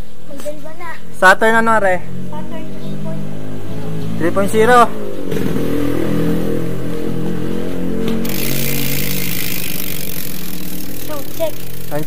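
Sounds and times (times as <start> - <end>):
bicycle hub ratchet buzzing: 8.0 - 12.0.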